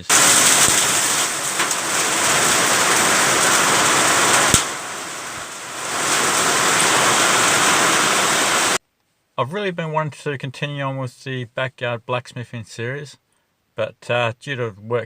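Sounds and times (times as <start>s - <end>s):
heavy rain: 0.0s - 8.8s.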